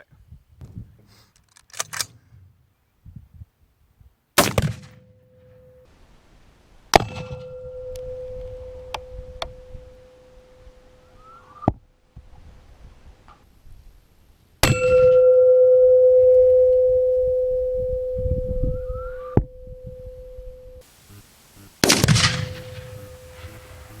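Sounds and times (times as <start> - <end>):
metallic ringing tone: 7.0 - 11.2, 14.6 - 20.8
explosion blast: 21.8 - 24.0
heavy impact: 21.8 - 24.0.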